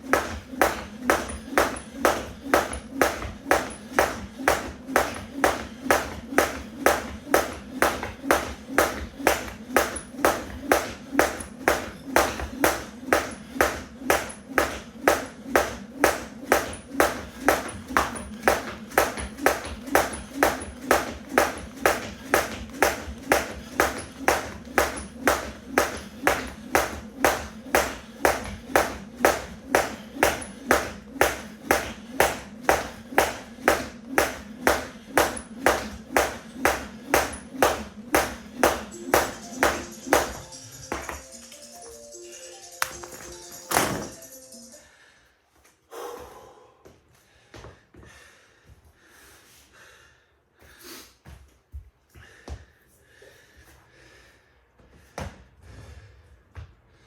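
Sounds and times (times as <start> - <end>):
jump rope slapping the floor: 0.0 - 41.5, 42.8 - 44.2.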